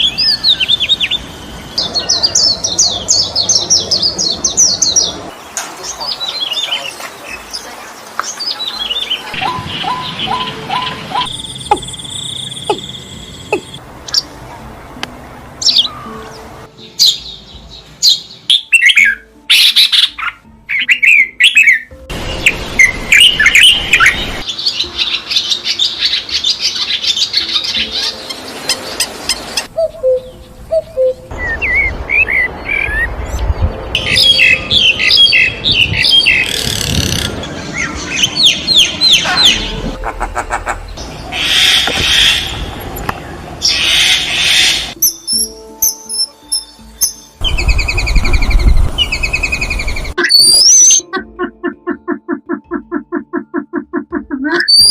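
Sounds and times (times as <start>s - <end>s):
small birds chirping: 0.0s - 14.3s, 40.8s - 51.0s.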